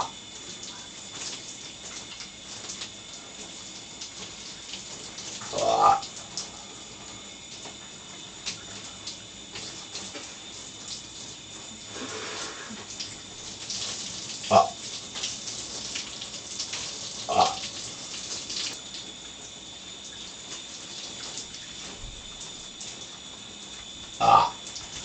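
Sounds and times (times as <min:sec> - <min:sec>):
running shower hiss: 0:00.0 - 0:25.0
loud burps: 0:05.5 - 0:06.1, 0:14.5 - 0:14.8, 0:17.3 - 0:17.7, 0:24.2 - 0:24.6.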